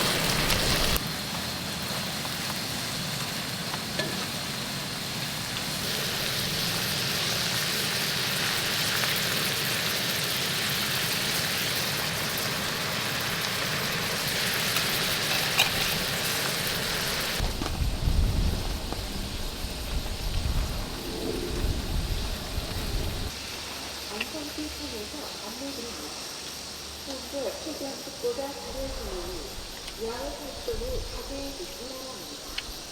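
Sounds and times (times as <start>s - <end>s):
food sizzling in a pan: 0.0s - 32.9s
irregular low rumble: 17.9s - 23.3s.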